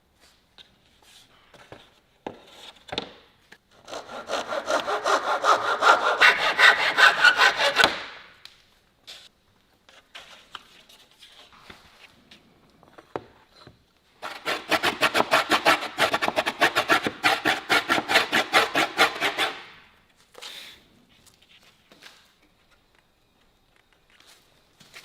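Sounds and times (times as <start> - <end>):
hand tool working wood: 3.9 - 8.1, 14.2 - 19.7.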